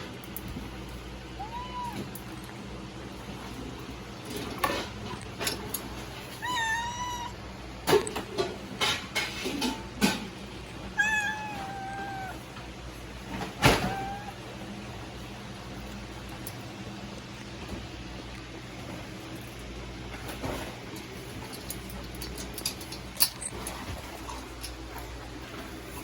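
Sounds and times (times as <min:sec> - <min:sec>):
cat meowing: 0:01.3 - 0:02.4, 0:06.3 - 0:07.4, 0:10.9 - 0:12.5, 0:13.6 - 0:14.5.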